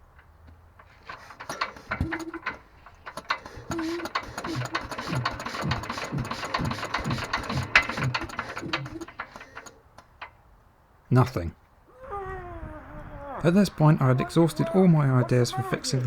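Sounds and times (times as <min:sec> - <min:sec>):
engine turned over by hand chuffing: 0:00.8 - 0:09.9.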